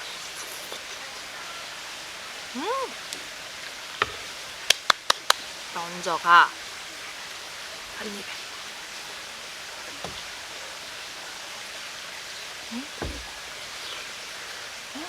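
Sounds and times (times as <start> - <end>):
mountain stream rushing: 0.0 - 15.0
soft low thumps: 9.9 - 10.4, 12.7 - 13.6.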